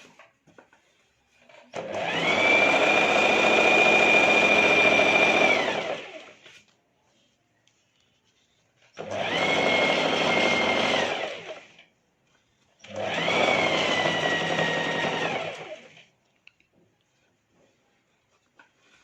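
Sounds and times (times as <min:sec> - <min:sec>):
sewing machine stitching: 0:01.4 - 0:06.4, 0:08.9 - 0:11.9, 0:12.8 - 0:16.1.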